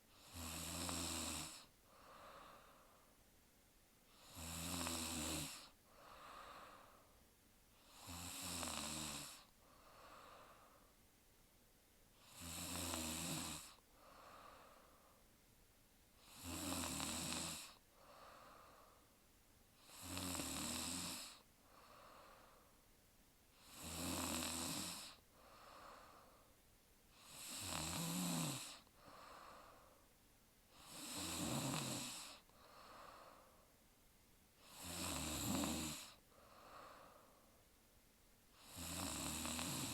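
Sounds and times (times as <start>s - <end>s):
woman snoring: 0.1s - 2.8s, 4.1s - 6.9s, 7.8s - 10.7s, 12.2s - 14.8s, 16.2s - 18.9s, 19.8s - 22.6s, 23.6s - 26.3s, 27.1s - 29.8s, 30.7s - 33.5s, 34.6s - 37.3s, 38.6s - 39.9s
soft breath: 1.4s - 3.3s, 5.5s - 7.9s, 9.3s - 11.1s, 13.7s - 15.4s, 17.6s - 19.2s, 21.3s - 23.7s, 25.0s - 27.4s, 28.8s - 31.0s, 32.2s - 33.8s, 36.0s - 37.8s.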